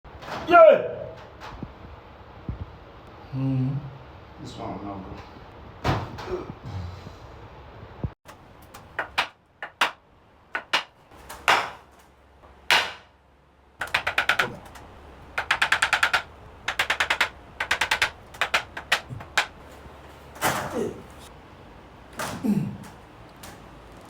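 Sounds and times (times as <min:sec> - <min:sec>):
hands slapping the body: 0:08.7 - 0:10.0, 0:10.6 - 0:11.9, 0:12.7 - 0:13.0, 0:15.4 - 0:19.6.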